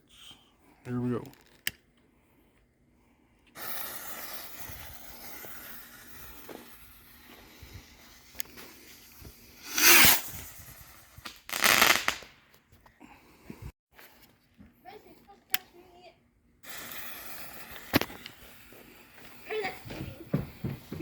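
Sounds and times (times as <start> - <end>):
bottle rocket hissing: 3.6 - 12.3, 16.6 - 19.7
loud firework bursts: 3.6 - 12.4, 16.6 - 19.8.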